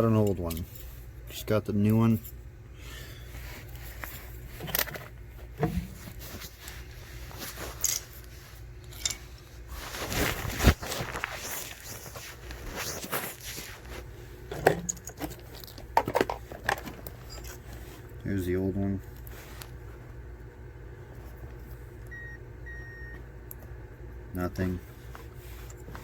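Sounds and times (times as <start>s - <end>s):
clicks and rustling of handling: 0.0s - 2.4s, 3.7s - 18.4s
rustle and scrape: 3.4s - 14.1s.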